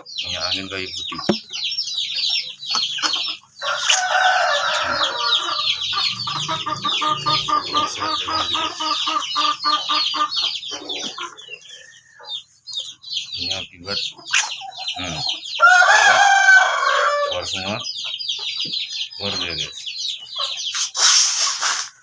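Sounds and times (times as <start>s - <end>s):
chicks chirping: 0.0s - 22.0s
hens clucking: 0.0s - 22.0s
rooster crowing: 3.6s - 8.1s, 15.6s - 17.5s.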